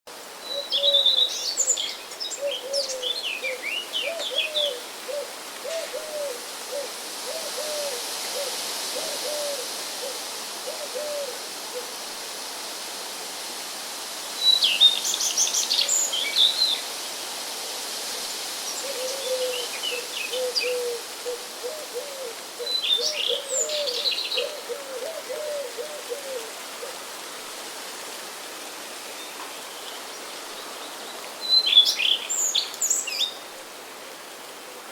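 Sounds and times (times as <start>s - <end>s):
bird hooting softly: 2.4s - 11.9s, 18.8s - 27.1s.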